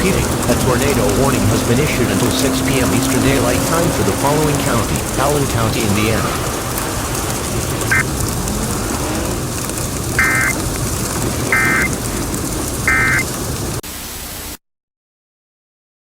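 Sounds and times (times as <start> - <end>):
steady rain: 0.0 - 14.6
warbling data tone bursts: 7.9 - 8.1, 10.2 - 10.6, 11.5 - 11.9, 12.9 - 13.3.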